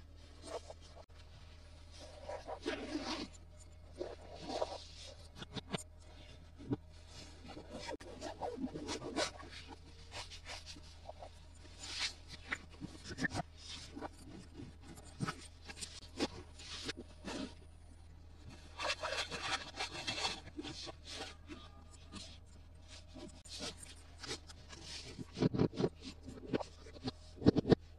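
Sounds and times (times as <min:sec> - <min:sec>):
hands rubbing toy packaging: 0:18.5 - 0:27.8.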